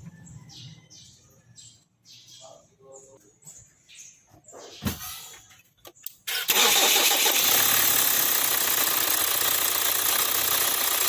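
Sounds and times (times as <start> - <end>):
car engine starting and running: 6.3 - 11.0.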